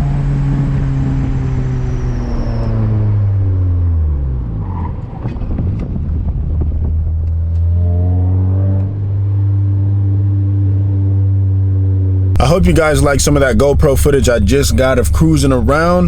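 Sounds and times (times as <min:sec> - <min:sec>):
car engine running: 0:12.4 - 0:16.0.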